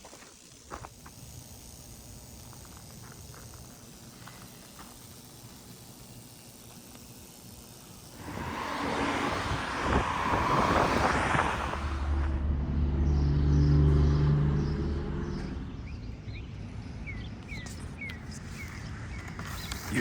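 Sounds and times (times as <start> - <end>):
vehicle passing: 8.1 - 17.1
bird chirps: 13.0 - 19.8.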